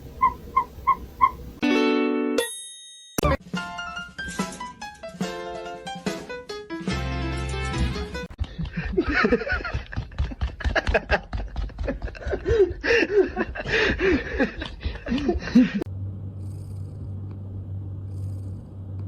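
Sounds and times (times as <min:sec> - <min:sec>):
low steady hum: 0:00.0 - 0:01.6, 0:13.1 - 0:19.0.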